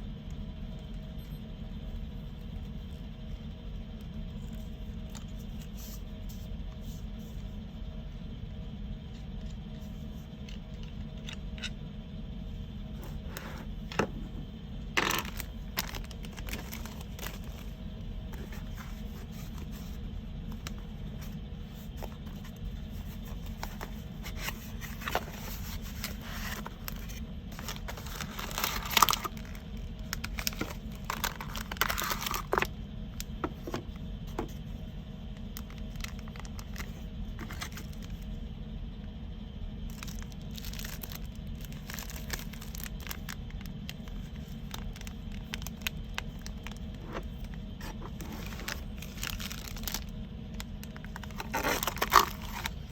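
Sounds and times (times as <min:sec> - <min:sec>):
steady low hum: 0:00.0 - 0:52.9
packaging rustling and crinkling: 0:15.0 - 0:34.8, 0:35.4 - 0:38.3, 0:39.9 - 0:52.9.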